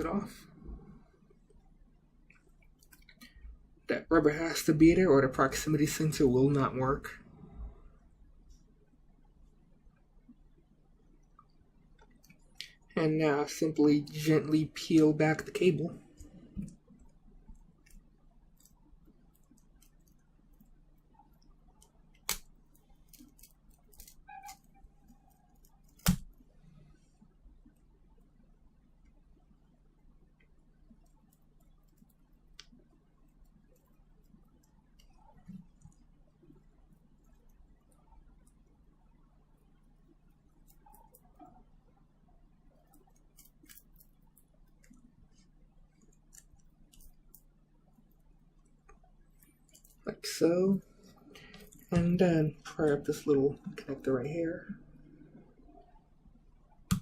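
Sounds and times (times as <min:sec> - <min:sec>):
steady low hum: 0:00.0 - 0:57.0
faint clicks and ticks: 0:01.1 - 0:03.7, 0:07.4 - 0:13.0, 0:15.4 - 0:50.1
thin squeak: 0:24.2 - 0:25.3.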